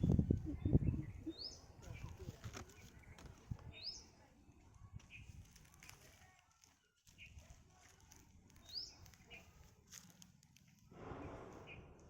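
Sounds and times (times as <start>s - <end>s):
faint bird chirps: 0.0s - 5.4s.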